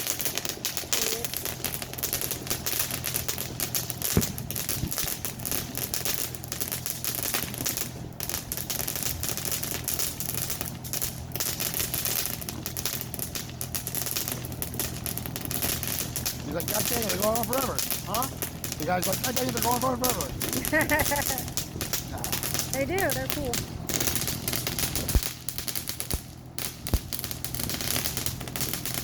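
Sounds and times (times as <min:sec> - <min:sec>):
firecrackers crackling: 0:00.0 - 0:29.0
loud pop: 0:02.6 - 0:08.5, 0:23.6 - 0:29.0.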